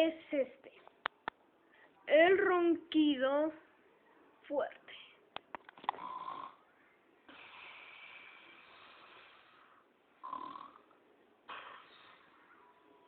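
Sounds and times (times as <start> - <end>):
man snoring heavily: 10.2 - 10.8.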